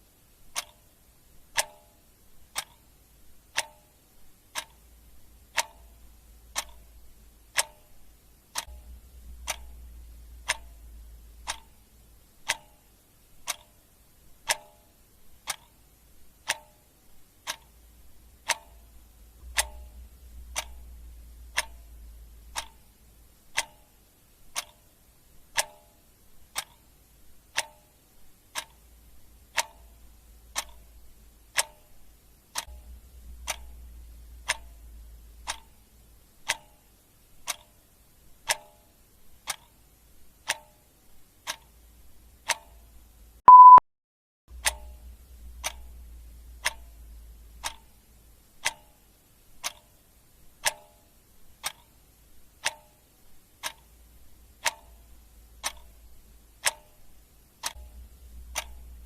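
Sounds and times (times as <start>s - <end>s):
clock ticking: 0.4s - 43.8s, 44.5s - 59.0s
short high beep: 43.5s - 43.8s.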